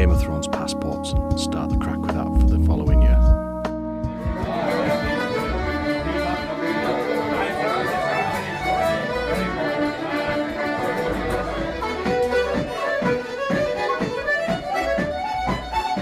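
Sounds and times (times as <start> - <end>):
accordion: 0.0 - 16.0
fiddle: 4.1 - 16.0.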